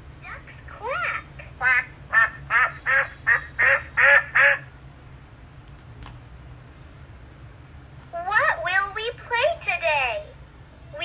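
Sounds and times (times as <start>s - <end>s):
recorded duck quacking: 1.4s - 4.7s.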